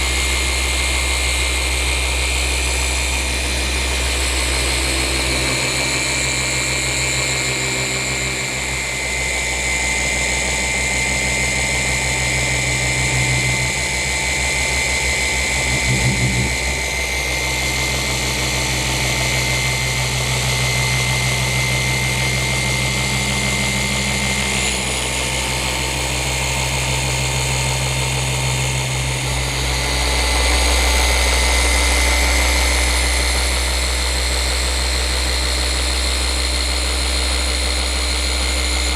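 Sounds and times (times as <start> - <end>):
polisher motor whine: 0.0 - 38.9.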